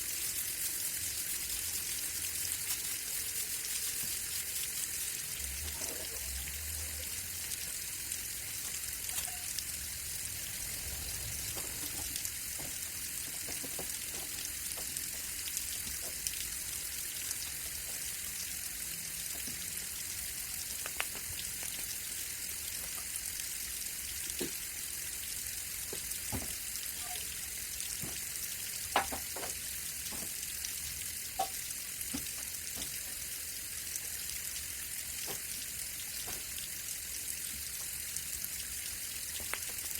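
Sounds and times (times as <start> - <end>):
water hissing: 0.0 - 28.6.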